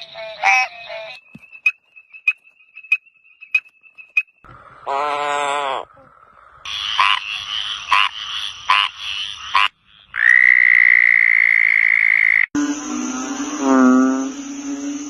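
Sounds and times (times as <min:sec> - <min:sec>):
deep frog call: 0:04.5 - 0:15.0
frog short calls: 0:04.8 - 0:12.5
high-pitched frog trill: 0:06.6 - 0:15.0.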